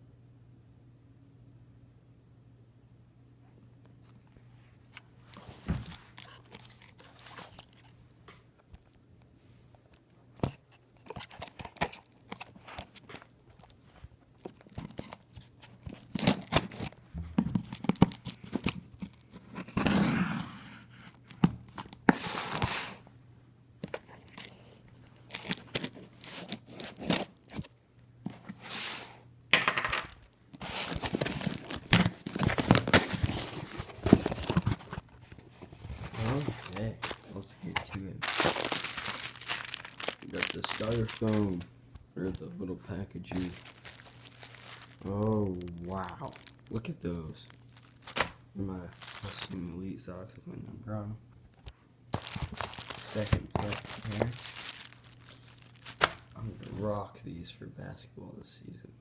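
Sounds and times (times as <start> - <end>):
packaging crinkling and scraping: 4.8 - 8.0, 10.3 - 23.0, 23.8 - 29.2, 30.1 - 49.8, 51.5 - 56.8
package being torn open: 5.8 - 7.9, 10.4 - 13.8, 14.4 - 20.1, 23.8 - 27.8, 30.1 - 42.5, 43.2 - 49.6, 51.6 - 56.4.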